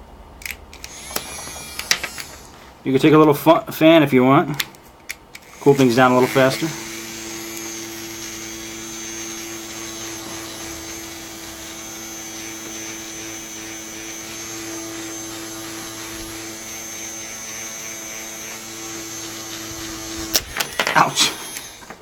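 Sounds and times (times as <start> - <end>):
electric fan motor humming: 0.4 - 2.9, 5.0 - 22.0.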